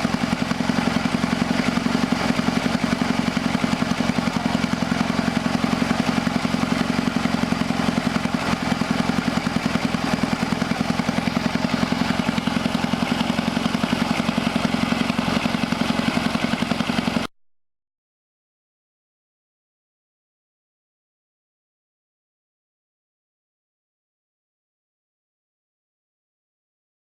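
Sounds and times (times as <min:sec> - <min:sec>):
sawmill engine running: 0:00.0 - 0:17.3.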